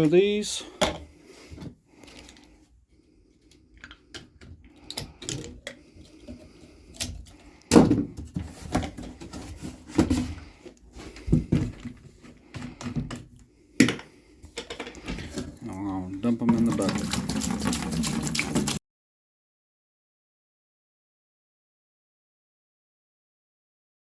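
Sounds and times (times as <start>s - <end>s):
plastic jugs clicking and knocking: 0.7s - 2.4s, 3.8s - 18.8s.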